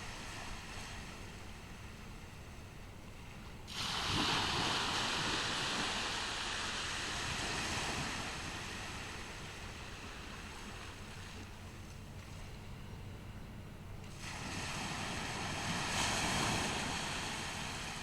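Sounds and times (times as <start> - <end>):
low rumble of sea: 0.0 - 18.0
wave breaking on beach: 3.7 - 11.0, 14.1 - 18.0.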